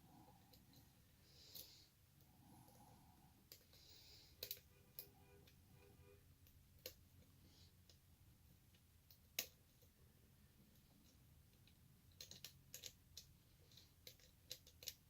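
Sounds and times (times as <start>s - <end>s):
faint lock picking clicks: 11.0s - 15.0s.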